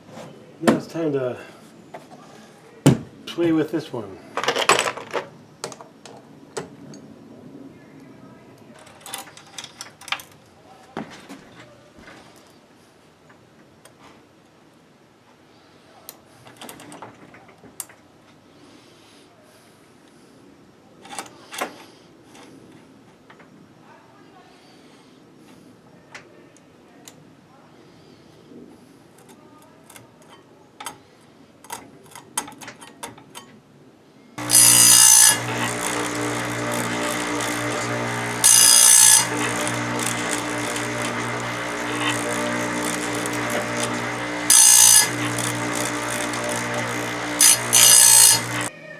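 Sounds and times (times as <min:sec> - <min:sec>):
small metal parts clinking: 0:08.8 - 0:10.4
grinder motor humming: 0:34.4 - 0:48.7
grinding wheel hiss: 0:34.4 - 0:48.7.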